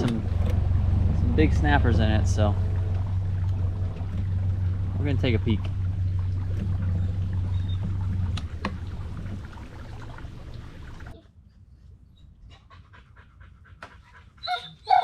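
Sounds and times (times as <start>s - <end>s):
boat motor running: 0.0s - 11.2s
dog panting rapidly: 12.5s - 14.8s.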